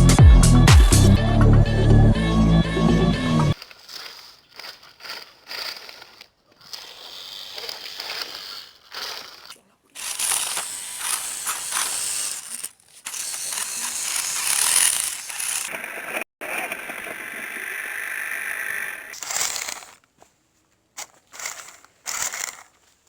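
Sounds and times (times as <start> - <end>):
toy car electric motor whirring: 3.5 - 20.1, 21.0 - 23.0.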